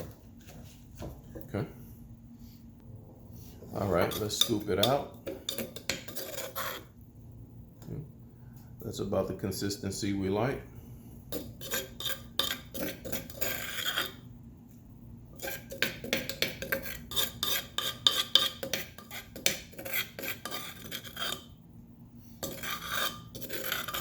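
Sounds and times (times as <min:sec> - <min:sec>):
spoon scraping a mortar: 0:03.7 - 0:07.0, 0:11.3 - 0:14.3, 0:15.3 - 0:21.6, 0:22.3 - 0:24.0.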